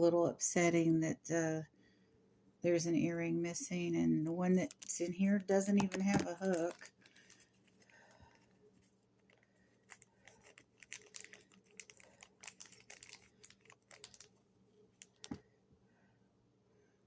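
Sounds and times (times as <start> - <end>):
low room hum: 0.0 - 17.0
small items clicking and tapping: 5.7 - 8.4, 9.2 - 14.3, 15.0 - 15.4.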